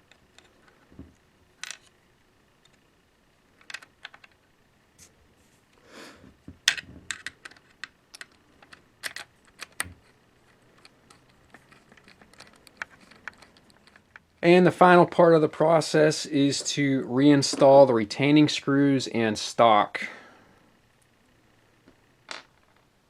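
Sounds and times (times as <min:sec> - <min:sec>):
small parts clicking: 0:00.0 - 0:02.0, 0:03.5 - 0:04.5, 0:06.6 - 0:14.4.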